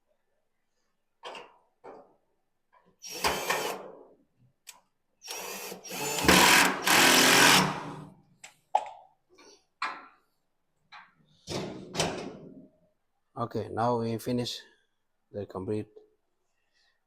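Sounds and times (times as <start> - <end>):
power drill driving a screw: 3.0 - 3.8, 5.2 - 8.0.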